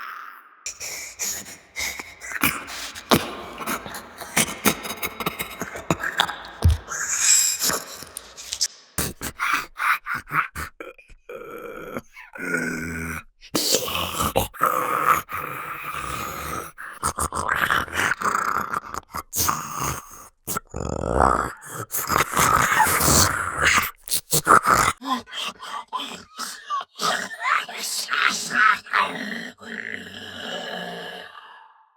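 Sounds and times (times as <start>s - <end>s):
creature voice groans and grunts: 0.0s - 15.0s, 24.6s - 31.9s.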